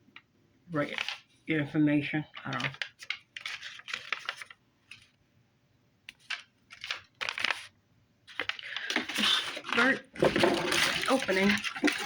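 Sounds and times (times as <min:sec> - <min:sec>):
packaging rustling and crinkling: 0:02.4 - 0:05.1, 0:06.1 - 0:07.7, 0:08.3 - 0:12.0.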